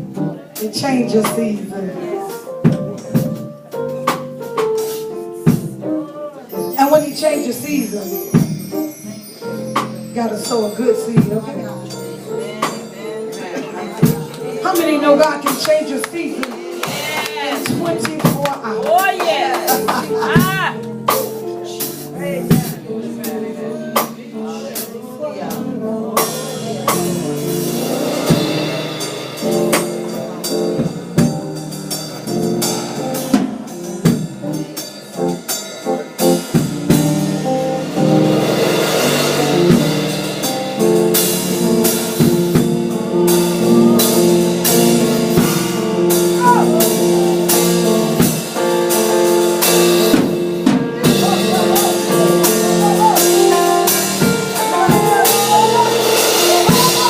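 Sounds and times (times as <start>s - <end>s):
drum kit: 0.0s - 57.0s
organ or keyboard chords: 35.9s - 57.0s.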